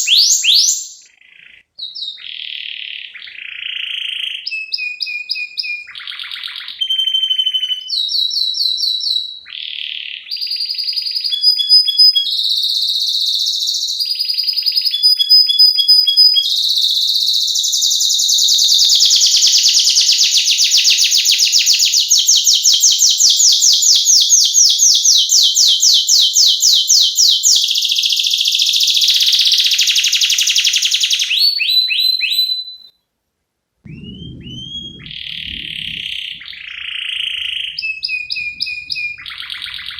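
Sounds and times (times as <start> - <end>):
canary singing: 33.9 - 39.9.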